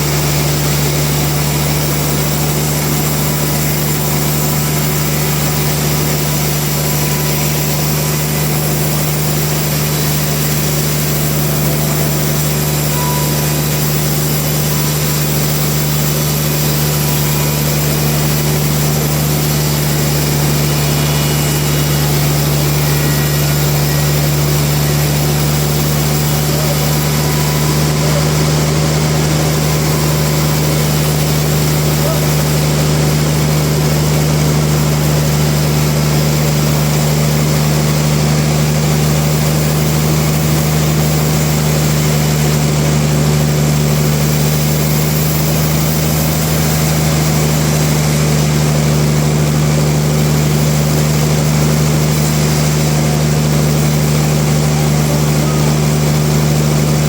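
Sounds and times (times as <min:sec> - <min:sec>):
sawmill machinery hum: 0:00.0 - 0:57.0.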